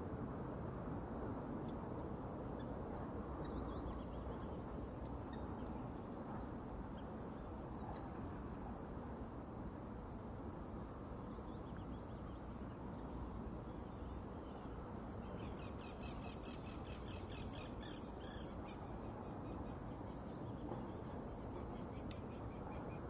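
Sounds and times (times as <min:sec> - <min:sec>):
low background noise: 0:00.0 - 0:23.0.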